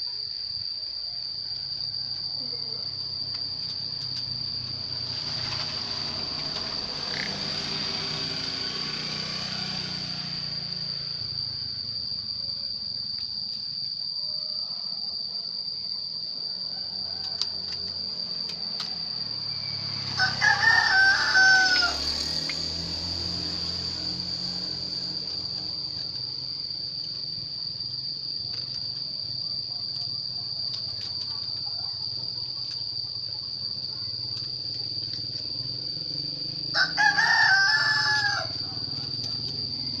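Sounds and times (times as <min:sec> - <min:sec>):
high-pitched insect drone: 0:00.0 - 0:40.0
rooster crowing: 0:00.9 - 0:02.6, 0:13.8 - 0:28.1, 0:36.4 - 0:40.0.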